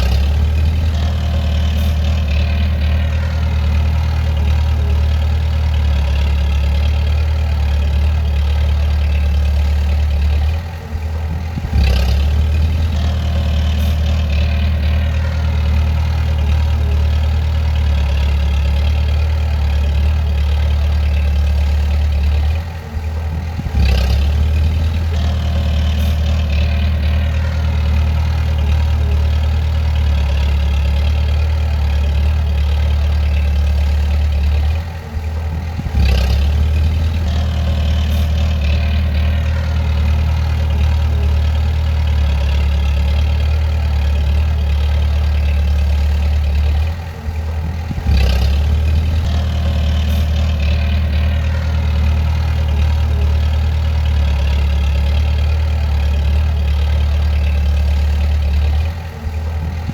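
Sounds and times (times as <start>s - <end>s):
bulldozer diesel engine running: 0.0s - 59.9s.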